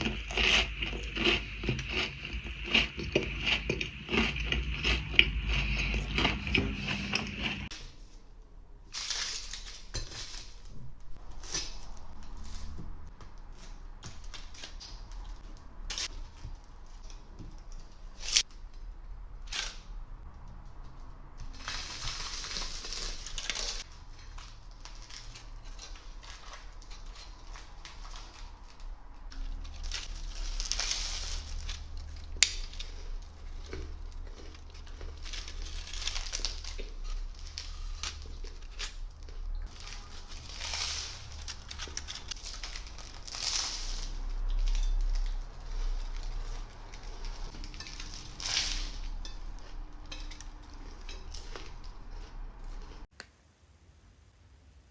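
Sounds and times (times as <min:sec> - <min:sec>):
crunching chocolates: 0:00.0 - 0:07.8, 0:21.4 - 0:53.1.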